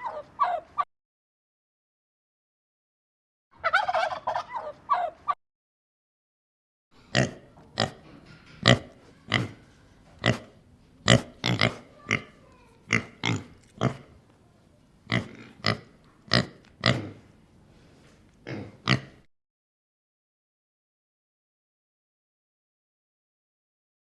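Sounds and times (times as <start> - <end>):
farm animal grunting: 7.0 - 14.2, 15.1 - 17.3, 18.4 - 19.3.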